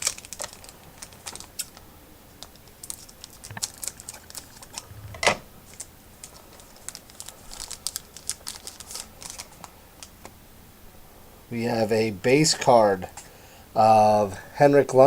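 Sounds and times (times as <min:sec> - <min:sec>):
wrapper crackling: 0:00.0 - 0:04.9, 0:05.7 - 0:10.1.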